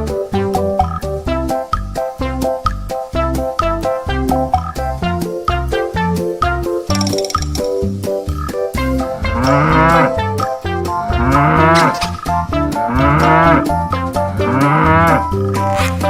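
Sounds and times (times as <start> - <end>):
background music: 0.0 - 16.0
cow mooing: 9.1 - 10.3, 11.1 - 12.1, 12.8 - 13.7, 14.4 - 15.9.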